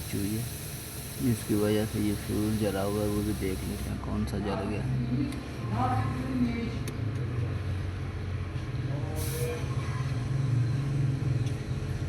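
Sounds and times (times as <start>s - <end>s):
short hiss: 0.0s - 3.9s
vehicle engine humming: 0.0s - 4.0s.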